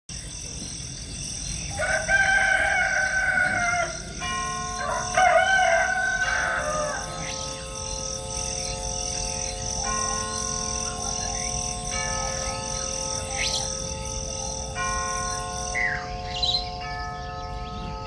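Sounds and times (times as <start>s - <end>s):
rooster crowing: 1.7s - 8.0s.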